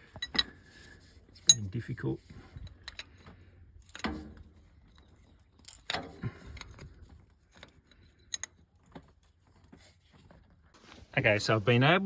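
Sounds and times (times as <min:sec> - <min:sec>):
spanner and bolts clinking: 0:07.5 - 0:08.7.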